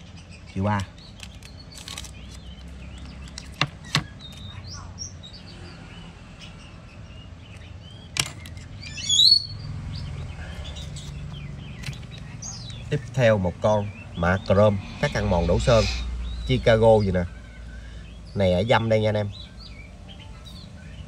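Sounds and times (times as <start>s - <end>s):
loud sweeping bird chirp: 0.0s - 21.0s
small birds chirping: 0.0s - 21.0s
sharp clicks: 7.5s - 8.8s.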